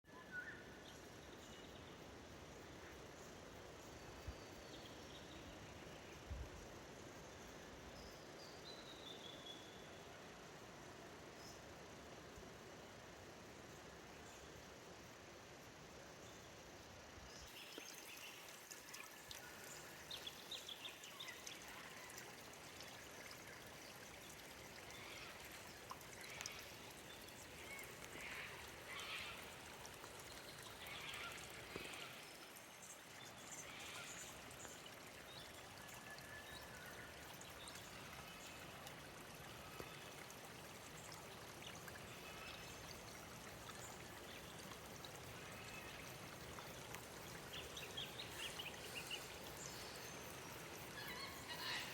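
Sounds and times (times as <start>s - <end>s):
creek water trickling: 0.0s - 51.9s.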